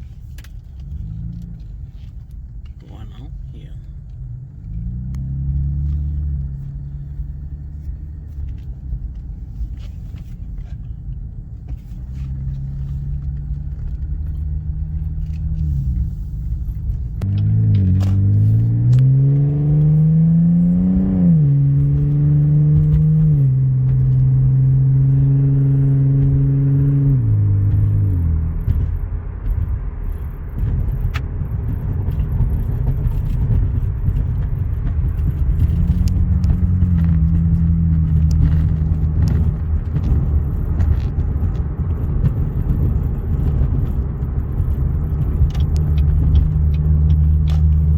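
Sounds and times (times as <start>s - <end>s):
car exhaust drone: 0.0s - 47.9s
road rumble: 0.0s - 47.9s.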